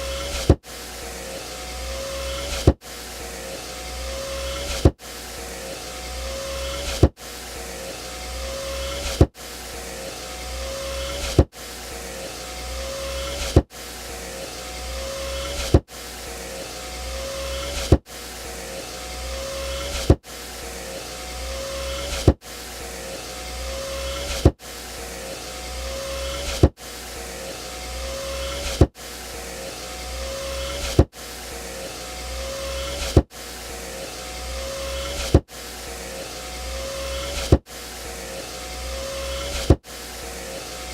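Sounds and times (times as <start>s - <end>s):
power window motor whining: 0.0s - 40.9s
window motor knock: 0.1s - 0.6s, 2.3s - 2.8s, 4.4s - 5.0s, 6.8s - 7.2s, 8.9s - 9.4s, 11.1s - 11.5s, 13.3s - 13.7s, 15.5s - 15.9s, 17.6s - 18.1s, 19.7s - 20.2s, 21.9s - 22.4s, 24.1s - 24.6s, 26.4s - 26.8s, 28.4s - 29.0s, 30.6s - 31.2s, 32.8s - 33.3s, 35.1s - 35.5s, 37.2s - 37.7s, 39.4s - 39.9s.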